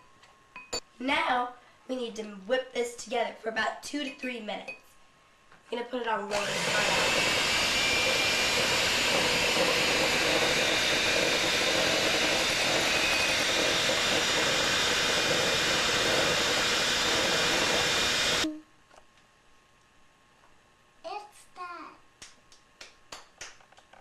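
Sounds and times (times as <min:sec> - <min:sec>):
electric mixer running: 0:06.3 - 0:18.5.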